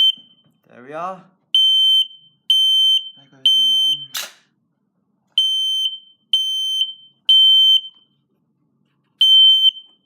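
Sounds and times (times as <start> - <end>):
smoke alarm beeping: 0.0 - 0.7, 1.5 - 4.3, 5.4 - 8.2, 9.2 - 10.0.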